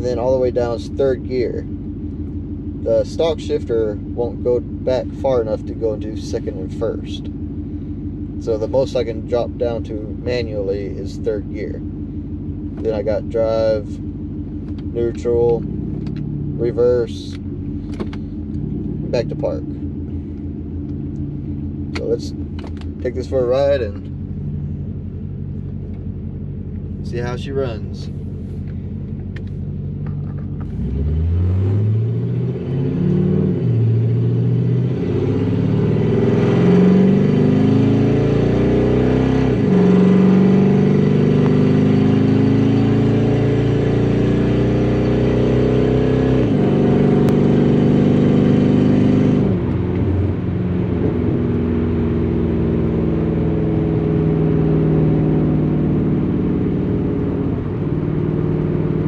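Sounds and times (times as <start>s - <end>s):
car engine accelerating hard: 0.0s - 59.0s.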